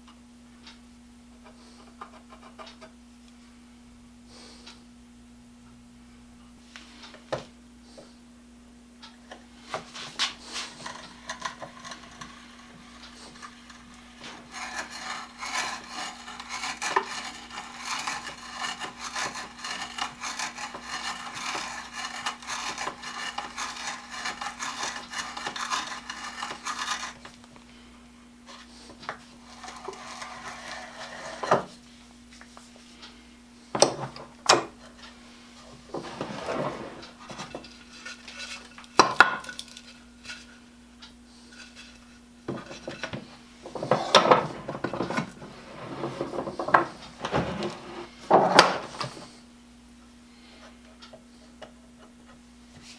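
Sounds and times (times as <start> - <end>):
hand saw cutting wood: 9.7 - 27.4, 28.6 - 31.8.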